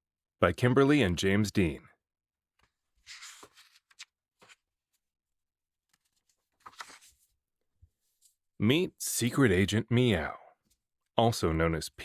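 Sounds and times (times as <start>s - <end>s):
book page turning: 2.6s - 5.0s, 5.8s - 8.4s
paper rustling: 2.6s - 5.0s, 5.8s - 8.4s.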